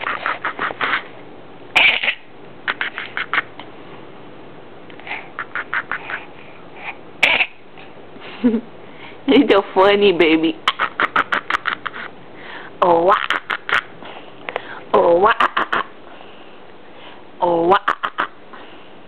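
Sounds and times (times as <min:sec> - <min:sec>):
short quack-like pulses: 0:00.0 - 0:01.1, 0:01.8 - 0:03.6, 0:05.1 - 0:06.3, 0:07.2 - 0:07.6.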